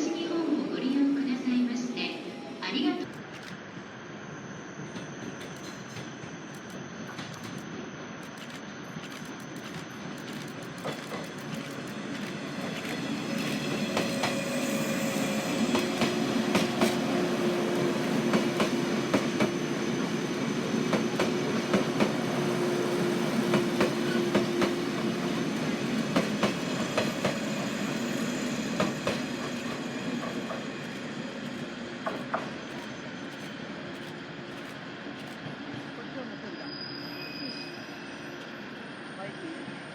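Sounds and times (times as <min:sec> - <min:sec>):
train wheels clicking over rail joints: 0:04.9 - 0:14.5, 0:23.5 - 0:27.6.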